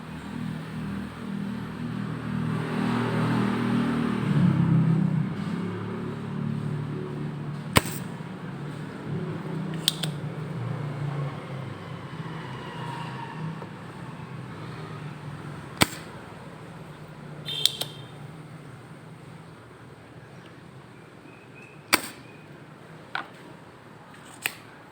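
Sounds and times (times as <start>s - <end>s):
sharp clicks: 7.7s - 8.1s, 9.7s - 10.4s, 15.8s - 16.2s, 17.5s - 18.2s, 21.9s - 22.4s, 24.2s - 24.7s.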